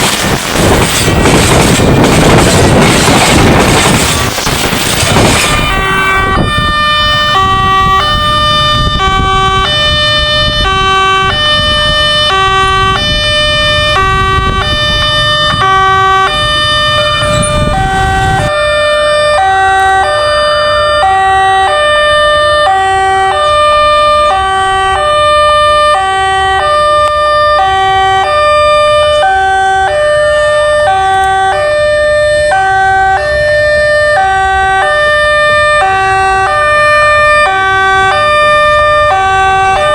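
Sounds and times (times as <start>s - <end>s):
heavy low rumble: 0.0s - 18.6s
level crossing alarm: 0.0s - 39.9s.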